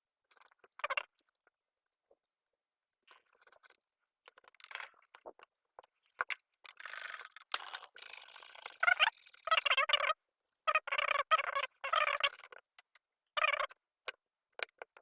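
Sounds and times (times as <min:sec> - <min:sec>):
small hard parts clicking: 0:03.1 - 0:15.0.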